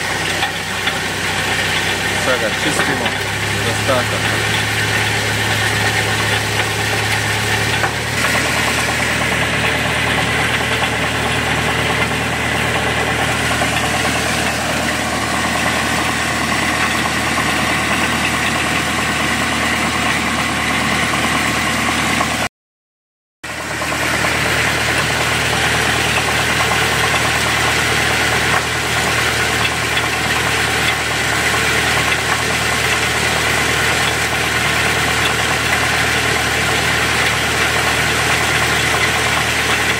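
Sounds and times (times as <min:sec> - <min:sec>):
wood chipper droning: 0:00.0 - 0:22.5, 0:23.4 - 0:39.9.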